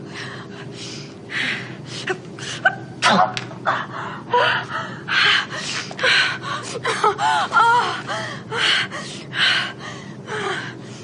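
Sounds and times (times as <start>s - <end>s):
person sneezing: 3.0s - 3.4s.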